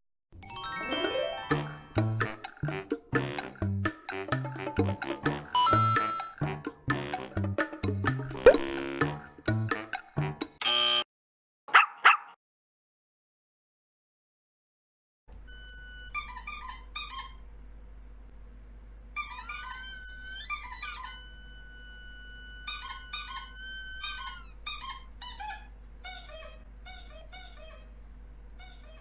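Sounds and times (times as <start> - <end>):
squeaky dog toy squeaking: 1.5 - 10.2, 15.5 - 17.4, 19.2 - 28.0, 28.6 - 29.0.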